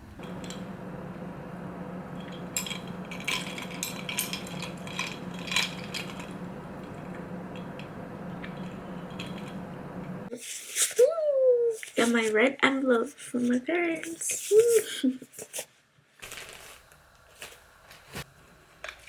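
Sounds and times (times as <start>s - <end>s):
steady low hum: 0.0s - 10.3s
hard objects clicking and clinking: 0.2s - 10.3s.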